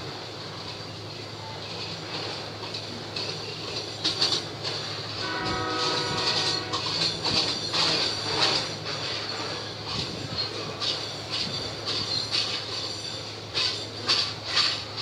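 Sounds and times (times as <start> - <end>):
freight wagons clattering on rails: 0.0 - 15.0
locomotive horn: 5.1 - 7.1.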